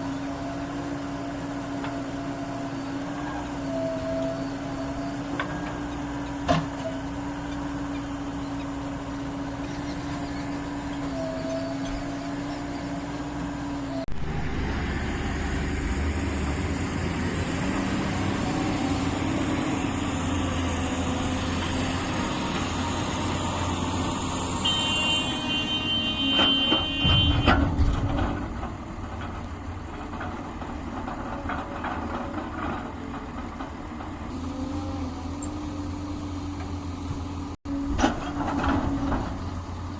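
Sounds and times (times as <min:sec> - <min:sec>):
diesel engine rumble: 0:00.0 - 0:39.9
horn toot: 0:24.6 - 0:27.8.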